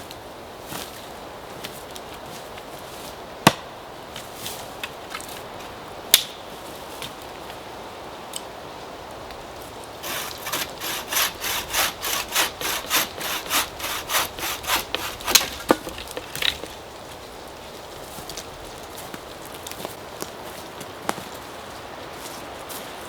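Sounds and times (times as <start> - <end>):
bow saw cutting wood: 10.0 - 16.6.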